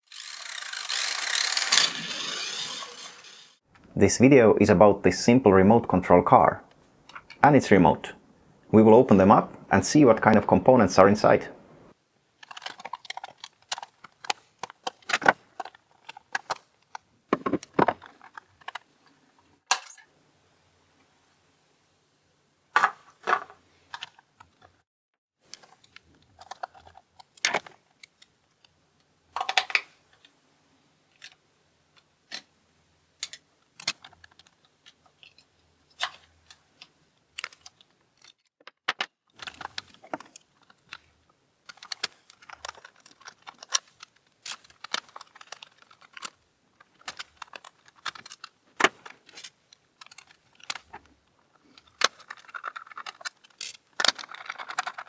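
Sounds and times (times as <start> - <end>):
plastic parts and tools clicking: 0.1 - 3.6, 12.4 - 20.1, 22.8 - 24.8, 25.5 - 30.4, 33.2 - 55.0.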